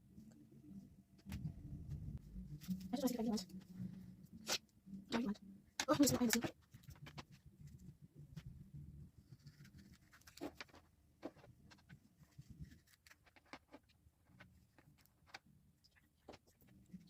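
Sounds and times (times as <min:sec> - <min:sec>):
faint low hum: 0:00.0 - 0:17.0
small clicks and rustles: 0:05.8 - 0:08.5, 0:09.3 - 0:17.0.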